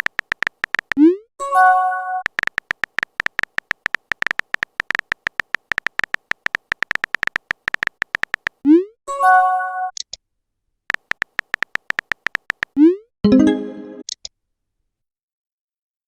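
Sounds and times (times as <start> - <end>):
phone keyboard typing clicks: 0.0 - 1.1, 2.2 - 8.6, 10.9 - 12.8
message notification chime: 13.3 - 14.0.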